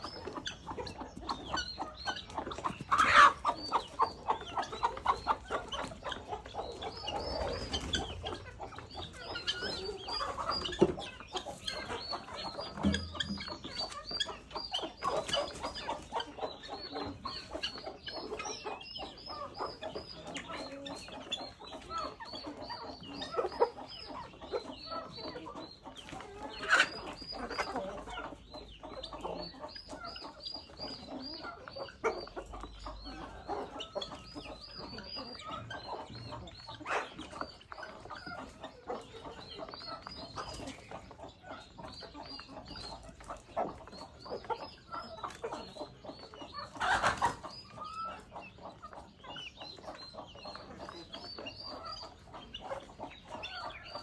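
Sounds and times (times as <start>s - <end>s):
chickens clucking and calling: 0.0s - 54.0s.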